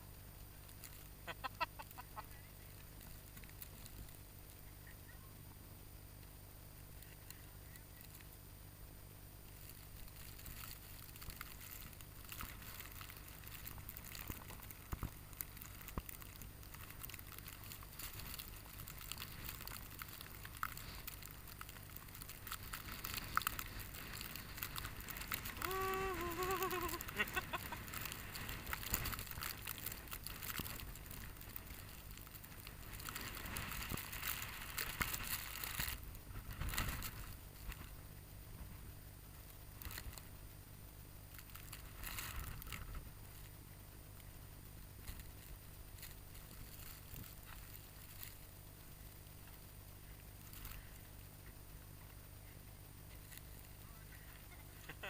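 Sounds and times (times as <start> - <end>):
small crackling clicks: 0.4 - 4.7, 6.2 - 8.4, 9.4 - 40.4, 41.2 - 55.0
footsteps crunching through snow: 17.2 - 37.9.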